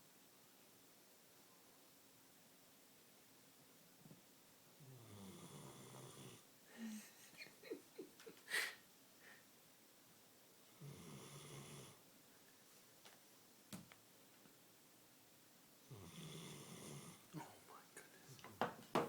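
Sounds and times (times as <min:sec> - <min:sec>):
dog snoring: 0:04.8 - 0:06.4, 0:10.8 - 0:12.0, 0:15.9 - 0:17.2.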